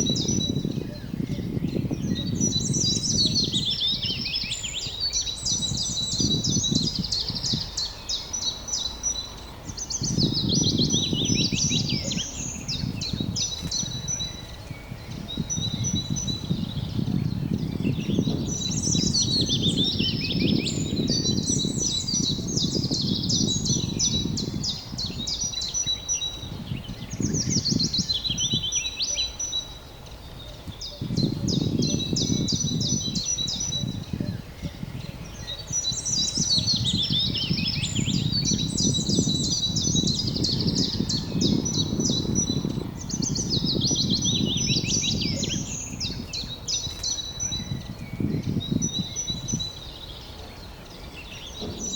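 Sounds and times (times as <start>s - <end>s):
songbirds singing: 0.0s - 51.9s.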